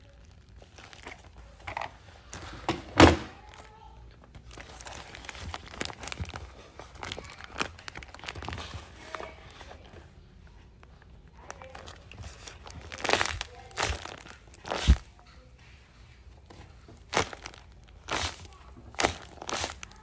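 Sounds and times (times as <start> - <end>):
paper and tape crinkling: 0.0 - 20.0.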